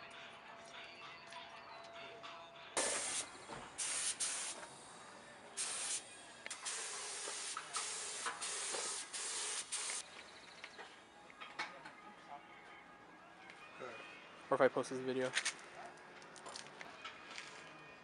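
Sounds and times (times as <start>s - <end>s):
paint spray gun hissing bursts: 2.8s - 4.6s, 5.6s - 10.0s.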